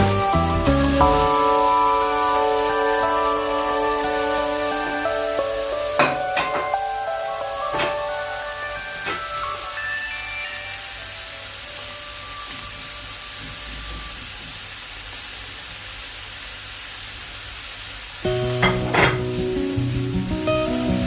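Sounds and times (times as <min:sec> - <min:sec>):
background music: 0:00.0 - 0:13.2, 0:18.3 - 0:21.0
food sizzling in a pan: 0:00.0 - 0:21.0.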